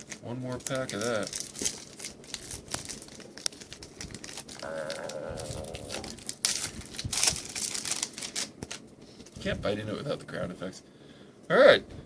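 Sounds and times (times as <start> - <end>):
card pack wrapper tearing: 0.0 - 8.9.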